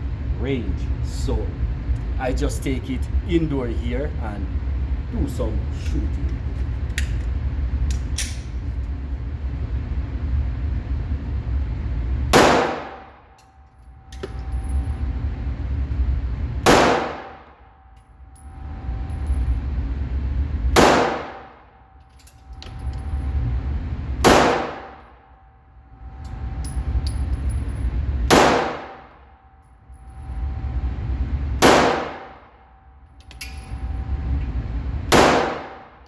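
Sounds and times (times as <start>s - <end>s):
pistol shots indoors: 12.3s - 14.8s, 16.6s - 18.6s, 20.7s - 23.0s, 24.2s - 25.7s, 28.2s - 29.6s, 31.6s - 33.9s, 35.1s - 36.0s.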